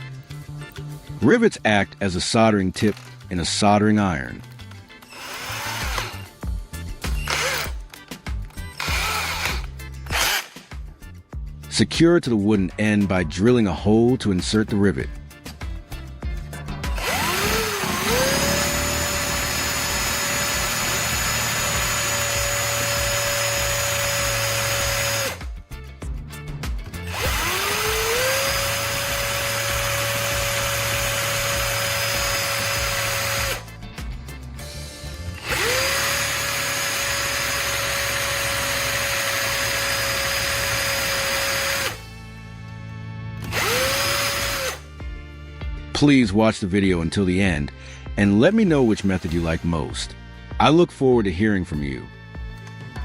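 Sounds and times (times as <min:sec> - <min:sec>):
electric drill boring wood: 0:05.1 - 0:06.3, 0:07.1 - 0:07.9, 0:08.8 - 0:10.6, 0:16.9 - 0:25.5, 0:27.0 - 0:33.6, 0:35.4 - 0:42.1, 0:43.4 - 0:44.8.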